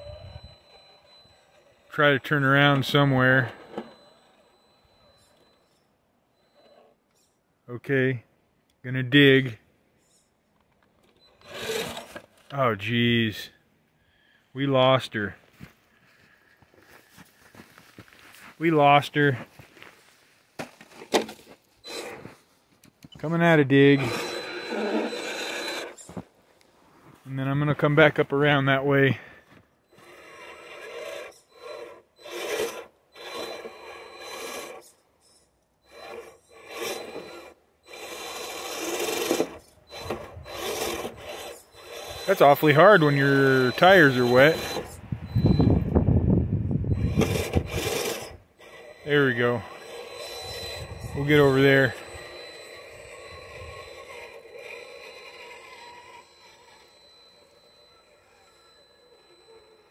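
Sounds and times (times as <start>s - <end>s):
electric motor whining: 0.0s - 5.8s, 11.0s - 12.4s, 21.8s - 22.4s, 23.6s - 26.2s, 29.9s - 59.9s.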